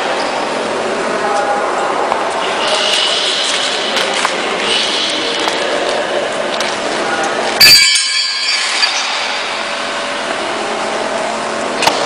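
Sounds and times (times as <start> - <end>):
sharp clink of hard part: 7.6 - 9.6.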